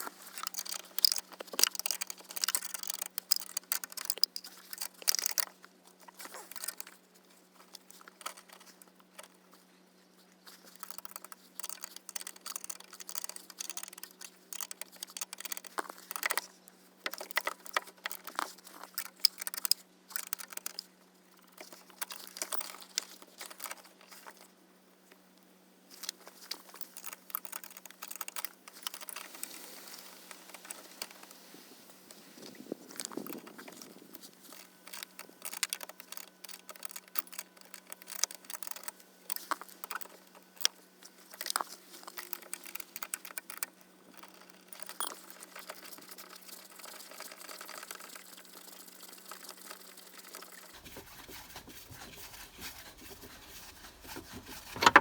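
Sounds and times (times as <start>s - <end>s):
hand tools clicking and rattling: 0.2s - 5.5s, 10.7s - 16.4s, 50.7s - 55.0s.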